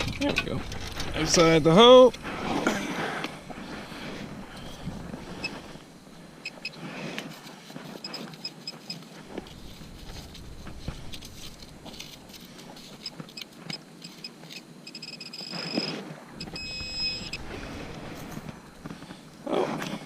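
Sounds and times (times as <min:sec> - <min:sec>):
metal detector high beeps: 0:06.4 - 0:06.8, 0:12.9 - 0:17.8.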